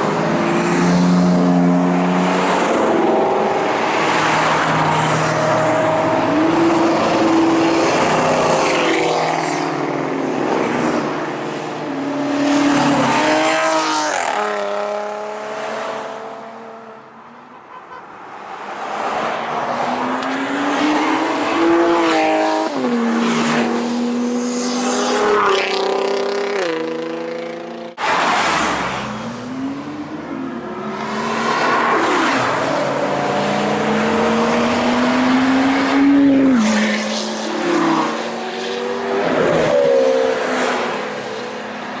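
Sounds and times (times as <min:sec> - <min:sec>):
sports car engines accelerating: 0:19.6 - 0:42.0.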